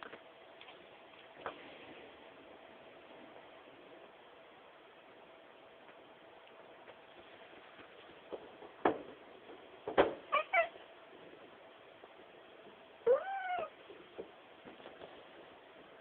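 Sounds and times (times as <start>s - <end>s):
cat meowing: 10.3s - 10.8s, 13.0s - 13.8s.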